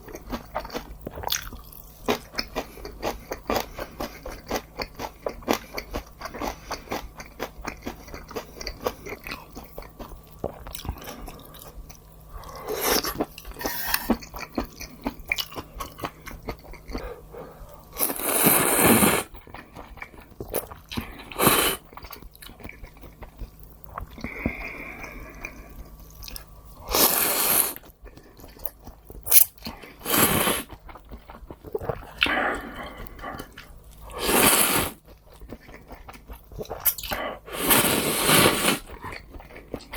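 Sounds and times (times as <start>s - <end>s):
close chewing with wet clicks: 0.0s - 13.5s, 14.2s - 17.1s, 19.3s - 21.2s, 21.9s - 26.6s, 30.7s - 34.0s, 35.0s - 37.2s, 38.9s - 39.9s.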